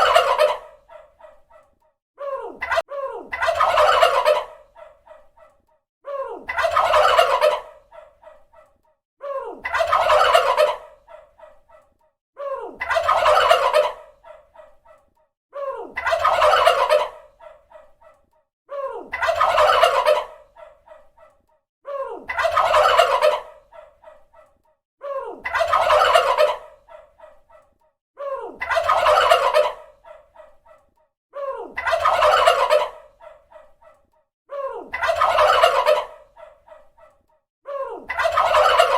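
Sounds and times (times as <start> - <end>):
turkey gobbling: 0.0 - 1.4, 2.6 - 5.5, 6.5 - 8.4, 9.6 - 11.6, 12.8 - 14.7, 16.0 - 17.8, 19.1 - 21.0, 22.3 - 23.9, 25.4 - 27.1, 28.6 - 30.2, 31.8 - 33.7, 34.9 - 36.8, 38.1 - 38.9.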